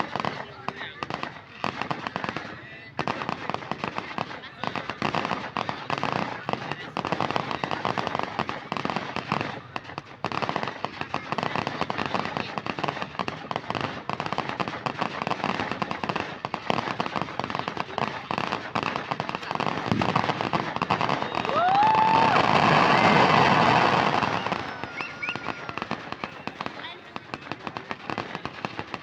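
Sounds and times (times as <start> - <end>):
fireworks crackling and popping: 0.0 - 29.0
rising firework whistle: 20.9 - 26.8.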